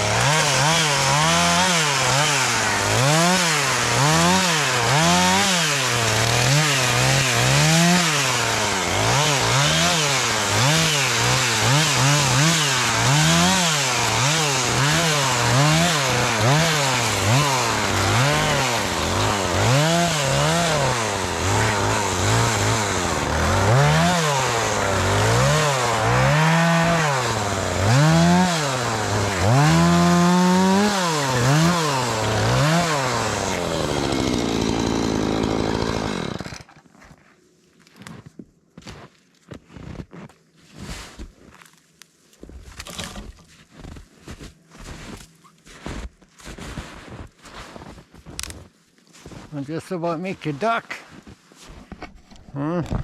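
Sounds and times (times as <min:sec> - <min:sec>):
chainsaw cutting wood revving: 0:00.0 - 0:36.9.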